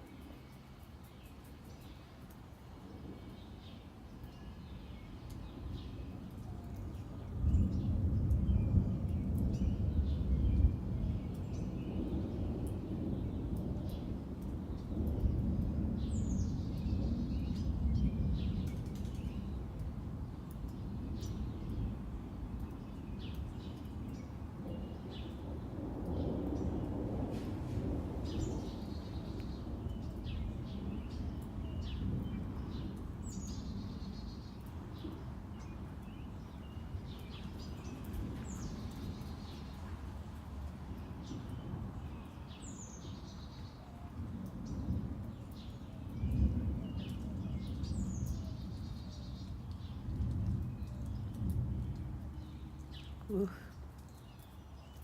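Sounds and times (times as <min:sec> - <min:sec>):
small birds chirping: 0:00.0 - 0:55.0
birds chirping: 0:41.0 - 0:55.0.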